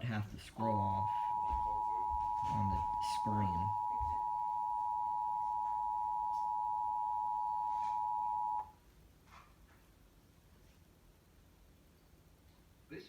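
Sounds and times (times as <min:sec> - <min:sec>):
two-tone alert alarm: 0:01.0 - 0:08.6.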